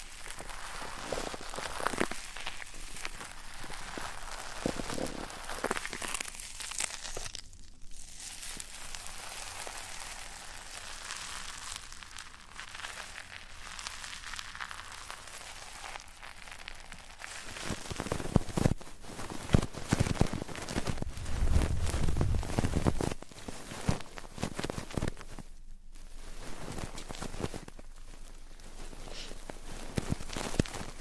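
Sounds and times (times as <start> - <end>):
crackly rustling on microphone: 0.0 - 31.0
bumps and deep thuds: 21.0 - 23.1.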